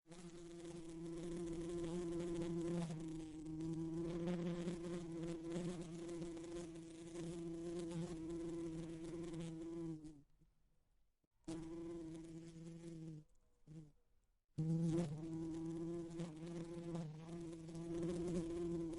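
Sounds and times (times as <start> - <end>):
bee buzzing against window: 0.1 - 10.2, 11.4 - 13.9, 14.6 - 18.9.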